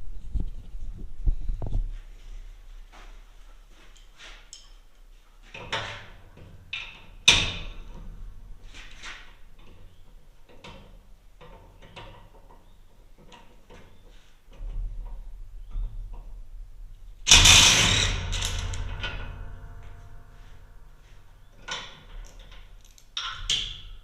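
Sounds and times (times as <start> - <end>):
metallic clanks on steel housing: 17.3 - 24.0.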